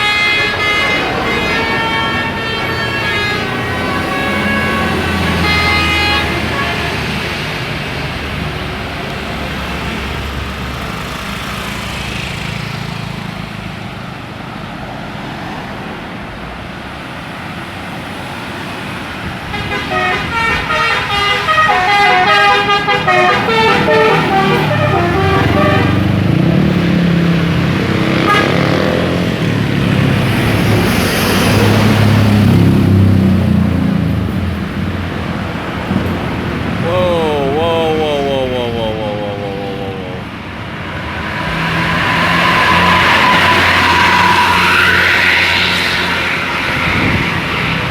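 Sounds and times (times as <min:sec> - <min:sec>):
multi-note bus horn melody: 0:00.0 - 0:07.5, 0:19.5 - 0:26.3, 0:28.1 - 0:29.1
bus engines running: 0:00.0 - 0:47.9.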